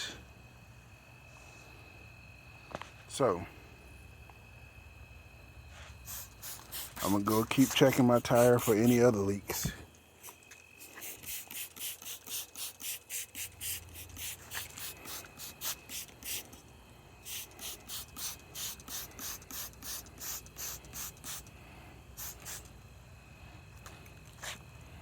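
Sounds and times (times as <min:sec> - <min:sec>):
trigger spray bottle squirting: 0:06.1 - 0:16.6, 0:17.2 - 0:21.6, 0:22.2 - 0:22.8.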